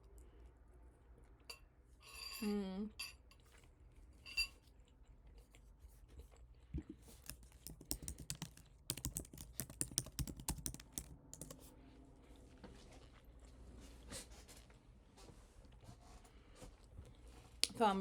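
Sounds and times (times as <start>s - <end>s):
typing on computer keyboard: 7.2s - 11.7s.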